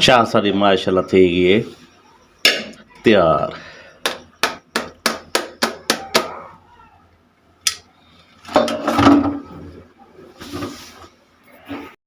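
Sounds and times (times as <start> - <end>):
utensils clattering: 8.5 - 9.7.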